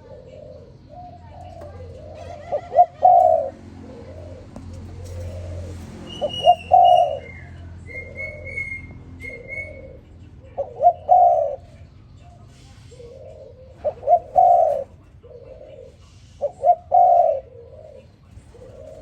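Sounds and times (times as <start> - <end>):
dove cooing: 0.0 - 11.9, 12.8 - 19.0.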